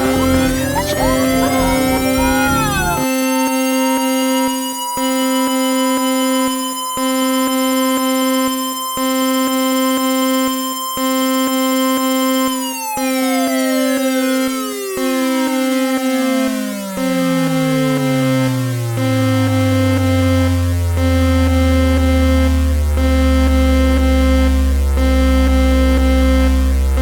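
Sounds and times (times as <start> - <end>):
falling pitch sweeps: 0.0 - 7.0
pulsing electronic tone: 0.0 - 12.6.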